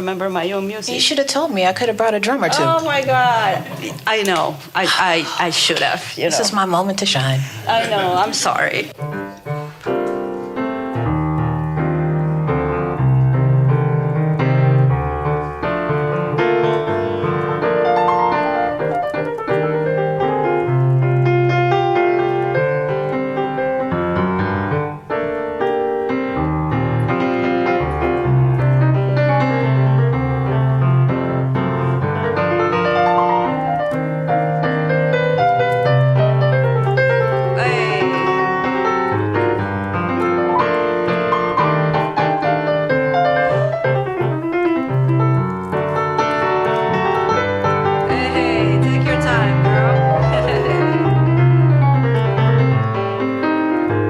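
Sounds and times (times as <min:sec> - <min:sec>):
piano playing chords and runs: 0:07.7 - 0:54.0.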